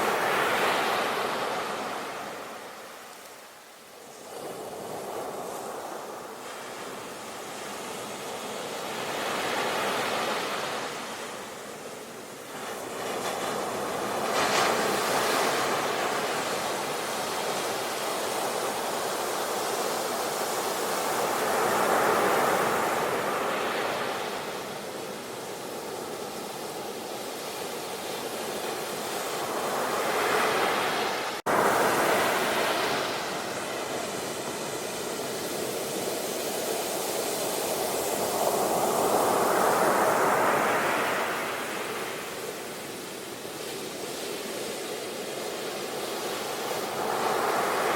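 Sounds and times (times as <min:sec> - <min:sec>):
sea waves breaking: 0:27.3 - 0:43.0.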